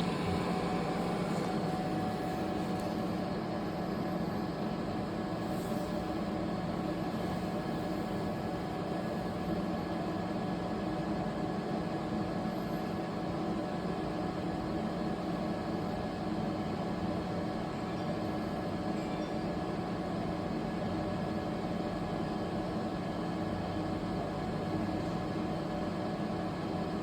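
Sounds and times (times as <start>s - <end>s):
machine hum: 0.0s - 3.3s.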